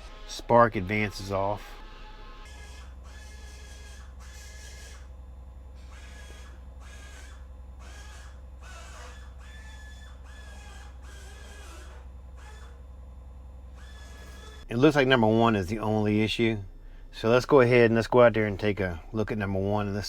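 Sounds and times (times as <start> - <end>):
engine idling with misfire: 0.0 - 20.0
short squawking tone: 5.8 - 12.8.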